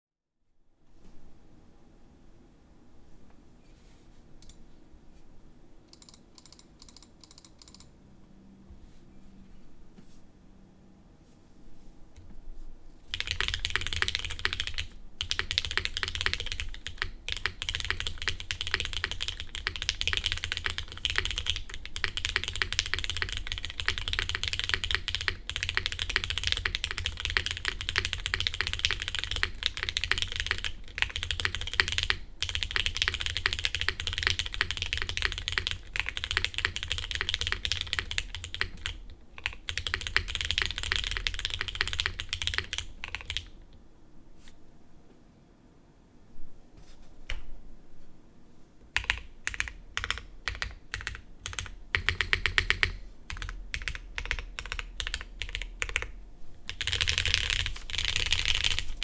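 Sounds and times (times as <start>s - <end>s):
fast typing on mechanical keyboard: 6.0s - 7.9s, 13.1s - 43.6s, 49.0s - 59.0s.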